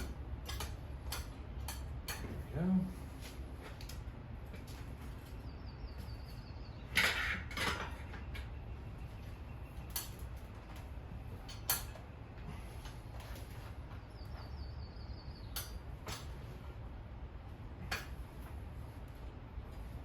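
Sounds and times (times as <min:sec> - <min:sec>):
tools clicking and clinking: 0:00.0 - 0:02.4, 0:11.4 - 0:12.1
low steady hum: 0:00.0 - 0:20.0.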